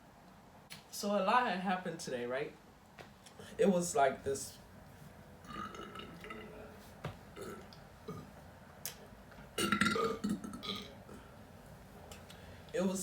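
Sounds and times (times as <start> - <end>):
person burping: 5.4 - 6.7, 7.4 - 8.3, 9.6 - 11.2.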